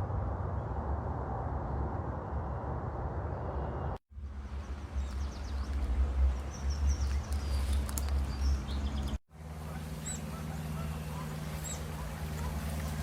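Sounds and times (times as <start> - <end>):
birds chirping: 3.6 - 13.0.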